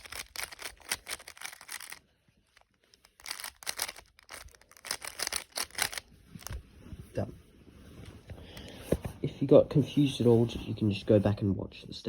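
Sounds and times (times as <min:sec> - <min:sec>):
puzzle cube clicking: 0:00.0 - 0:02.0, 0:02.6 - 0:06.6.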